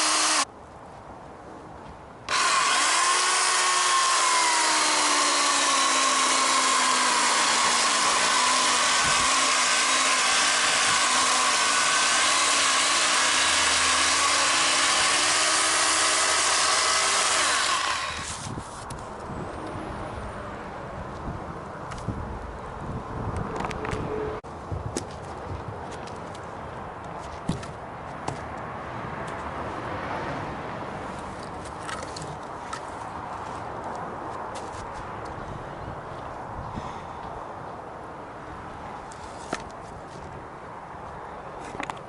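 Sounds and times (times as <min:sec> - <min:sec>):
power tool motor cutting wood: 0:00.0 - 0:00.4, 0:02.3 - 0:18.5.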